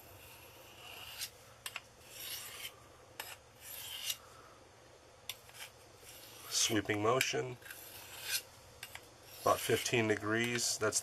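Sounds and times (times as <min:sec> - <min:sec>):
knife scraping on sharpening stone: 0:00.2 - 0:01.4, 0:02.0 - 0:04.2, 0:07.6 - 0:10.0.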